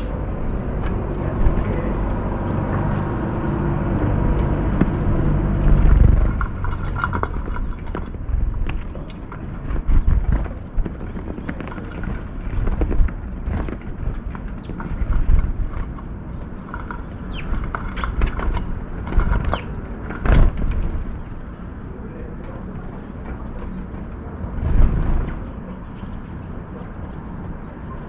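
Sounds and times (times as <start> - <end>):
wind buffeting microphone: 0.0 - 28.0
small bird chirps: 16.4 - 18.3.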